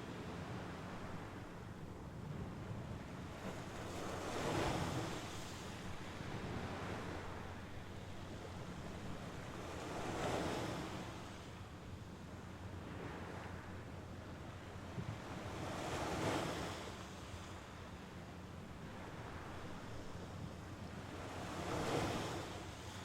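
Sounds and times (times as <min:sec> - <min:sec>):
waves washing onto shore: 0:00.0 - 0:13.7
wind rumble on microphone: 0:00.0 - 0:23.0.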